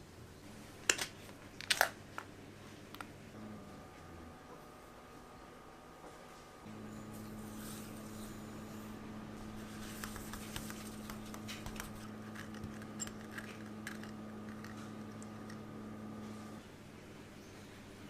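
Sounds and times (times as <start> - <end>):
low electrical hum: 0.0 - 18.0.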